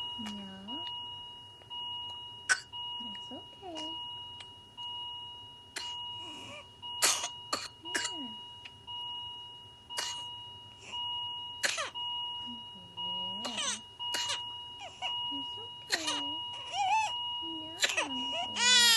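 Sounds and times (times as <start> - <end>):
child coughing: 2.5 - 2.7, 5.8 - 6.0, 7.0 - 8.4, 10.0 - 10.3, 11.6 - 12.0, 13.4 - 14.5, 15.8 - 16.8, 17.7 - 18.9.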